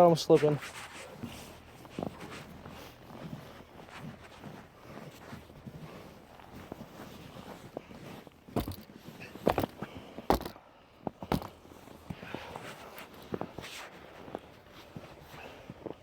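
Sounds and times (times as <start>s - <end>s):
footsteps crunching in wet snow: 0.0s - 10.5s.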